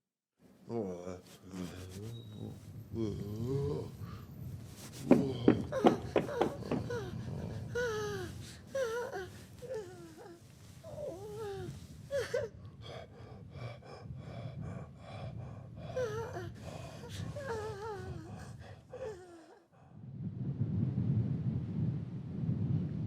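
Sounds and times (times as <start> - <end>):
whimpering moaning cries: 0.7 - 4.4, 5.0 - 12.5, 16.0 - 19.7
quick rhythmic breaths: 1.2 - 20.1
low rumble: 20.0 - 23.0.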